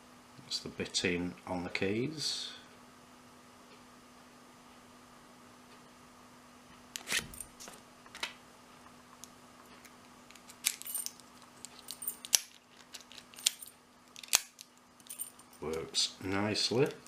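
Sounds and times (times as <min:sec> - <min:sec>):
keys jangling against padlock: 0:10.4 - 0:15.8.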